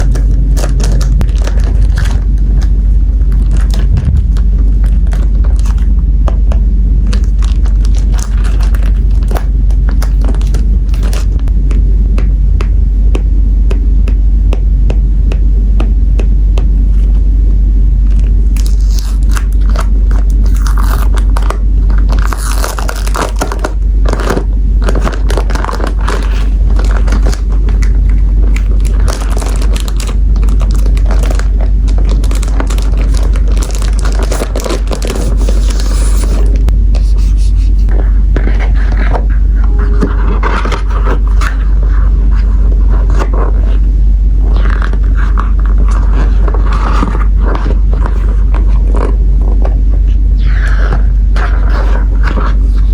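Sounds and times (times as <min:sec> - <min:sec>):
plastic packaging crinkling and tearing: 0:00.0 - 0:05.9, 0:07.0 - 0:11.4, 0:18.6 - 0:37.2
taps clicks and scrapes: 0:00.0 - 0:17.2, 0:18.1 - 0:43.7
loud low rumble: 0:00.0 - 0:52.9.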